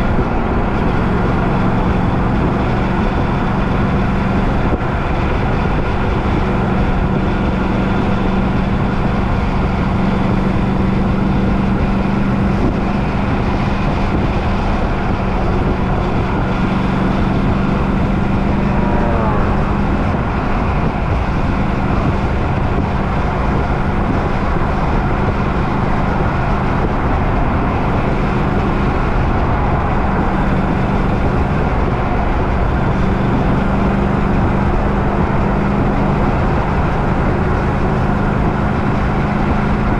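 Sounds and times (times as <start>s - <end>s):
vehicle engine hum: 0.0s - 39.9s.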